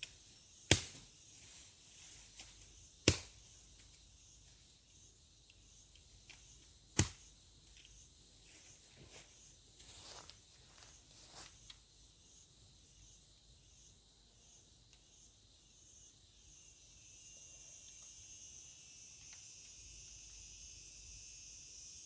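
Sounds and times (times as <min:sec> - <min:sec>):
steady high hiss: 0:00.0 - 0:22.0
sharp crack: 0:00.7 - 0:01.1, 0:03.0 - 0:03.4, 0:06.9 - 0:07.2.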